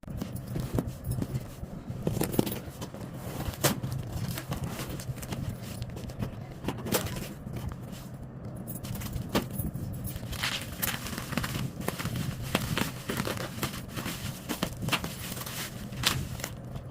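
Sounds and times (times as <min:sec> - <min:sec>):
steady low hum: 0:00.0 - 0:16.9
cardboard box being handled: 0:10.3 - 0:16.6.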